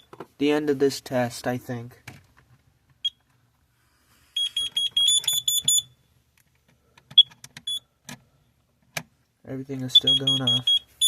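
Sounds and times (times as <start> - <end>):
carbon monoxide detector beeping: 0.0 - 0.2, 4.4 - 6.0, 7.2 - 7.9, 9.9 - 11.0.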